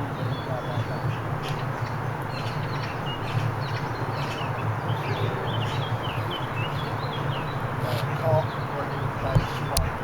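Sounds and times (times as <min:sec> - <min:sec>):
small birds chirping: 0:00.0 - 0:10.0.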